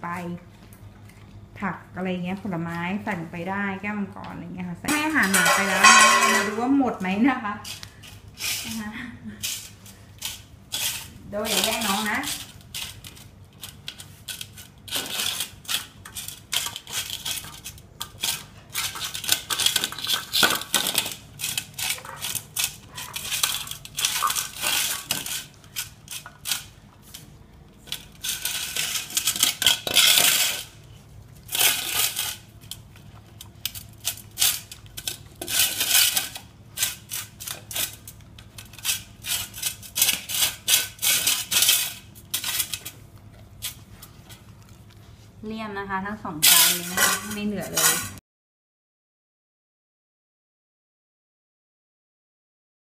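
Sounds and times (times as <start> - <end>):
dishes clinking as dogs eat: 5.0 - 6.8
dogs chewing and licking: 15.5 - 27.0, 42.8 - 45.4.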